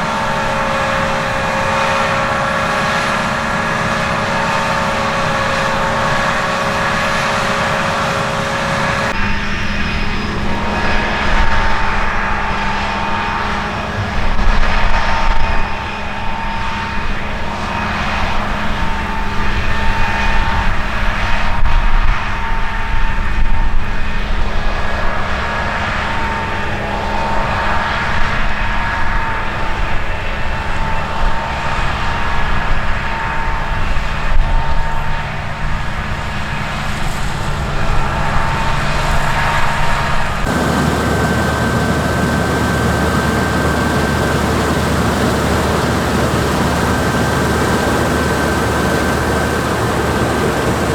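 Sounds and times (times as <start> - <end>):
harvest machinery engine drone: 0.0 - 50.9
high machine whine: 37.6 - 50.9.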